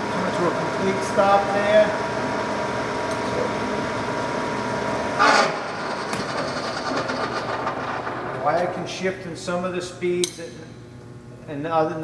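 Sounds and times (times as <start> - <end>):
steady whine: 0.0 - 11.4
lathe gears clattering: 4.8 - 9.2.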